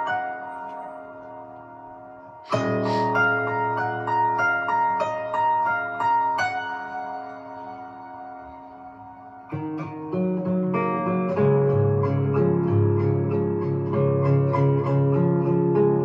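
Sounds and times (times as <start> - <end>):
fingerpicked harp guitar: 2.4 - 16.0.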